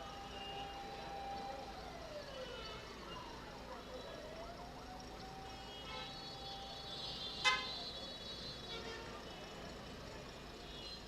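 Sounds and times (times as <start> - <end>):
siren wailing: 0.0 - 3.4
background traffic: 0.0 - 11.0.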